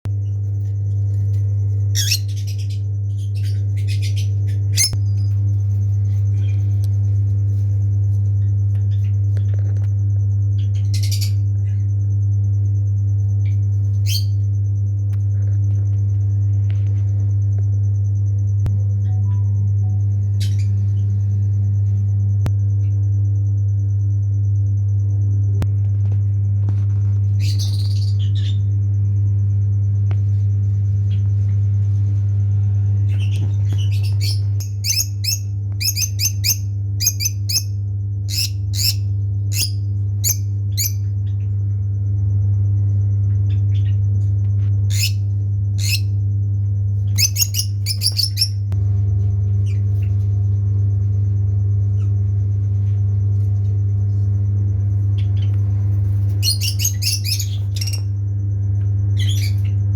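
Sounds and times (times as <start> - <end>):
caged birds chirping: 0.1 - 9.7, 10.4 - 12.7, 13.4 - 14.6, 27.3 - 28.9, 32.7 - 41.6, 44.8 - 46.2, 47.0 - 51.2, 51.8 - 59.9
loud low hum: 0.1 - 59.9.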